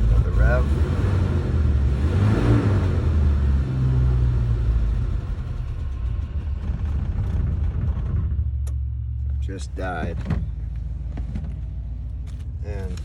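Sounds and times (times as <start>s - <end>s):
engine rough idling: 3.0s - 13.0s.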